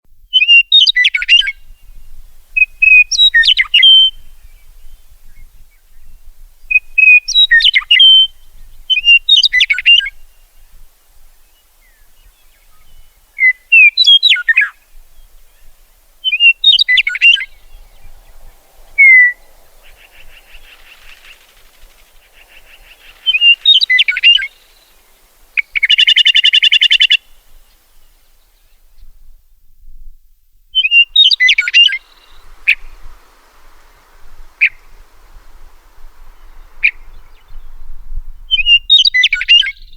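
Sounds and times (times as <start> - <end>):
meadowlark singing: 0.2 - 29.1, 30.7 - 39.9.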